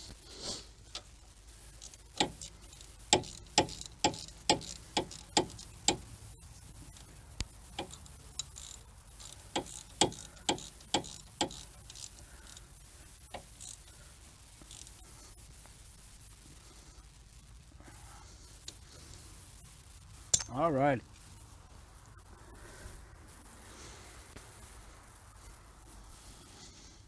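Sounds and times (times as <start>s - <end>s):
ratchet wrench clicking: 1.7s - 12.7s, 13.3s - 14.0s, 14.6s - 15.0s.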